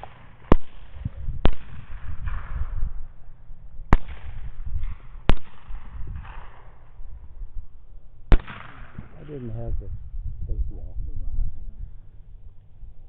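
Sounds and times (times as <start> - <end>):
gunshots: 0.0 - 2.8, 3.9 - 7.0, 8.3 - 9.5
low rumble: 0.1 - 13.0.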